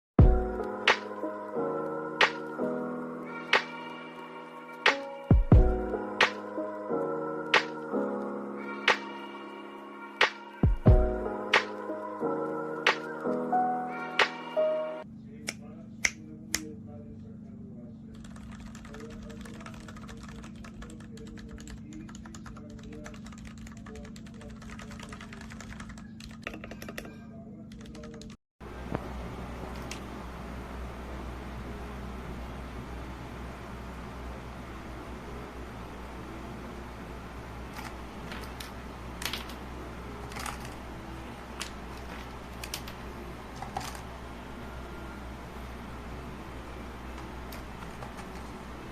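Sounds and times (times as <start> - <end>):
steady low hum: 15.0 - 26.2, 28.6 - 48.9
mechanical keyboard typing: 18.1 - 28.3, 37.7 - 39.6, 40.2 - 40.8, 41.6 - 44.0, 47.2 - 48.6.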